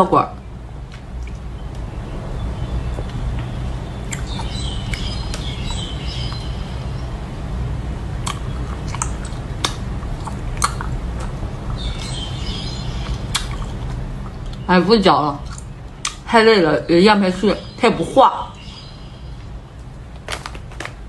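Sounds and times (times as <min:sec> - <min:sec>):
steady low hum: 0:00.0 - 0:21.0
wet chewing clicks and smacks: 0:00.9 - 0:01.5, 0:04.1 - 0:05.5, 0:08.2 - 0:12.2, 0:13.0 - 0:14.7.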